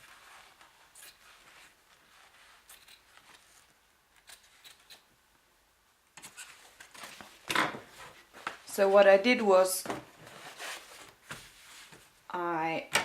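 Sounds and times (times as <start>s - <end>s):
fabric rustling: 0.0s - 3.8s, 6.4s - 12.2s.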